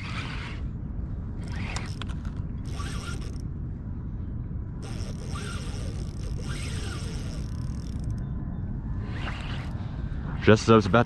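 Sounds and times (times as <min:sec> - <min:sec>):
steady low rumble: 0:00.0 - 0:11.0
fishing reel gears whirring: 0:01.4 - 0:03.4, 0:04.8 - 0:08.2, 0:09.1 - 0:09.8.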